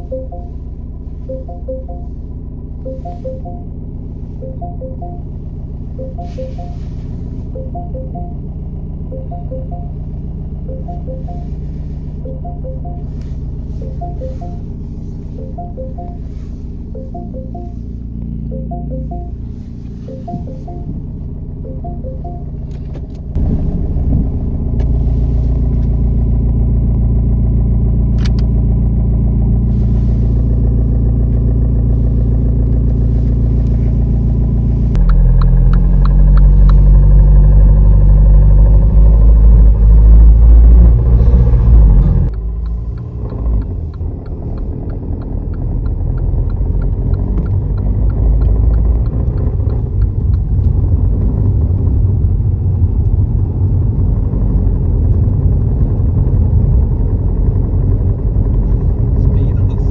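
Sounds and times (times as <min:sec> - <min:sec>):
diesel engine running: 0:00.0 - 0:59.9
light regular ticking: 0:34.9 - 0:37.7, 0:42.2 - 0:50.6.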